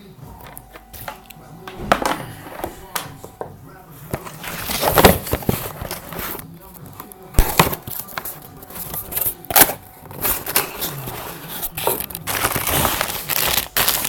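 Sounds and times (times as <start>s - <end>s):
packing material crinkling: 4.3s - 14.0s.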